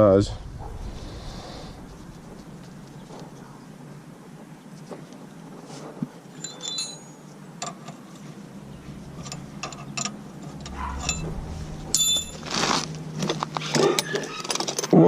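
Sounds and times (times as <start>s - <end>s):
metal parts and tools clinking: 6.4s - 8.0s, 13.7s - 15.0s.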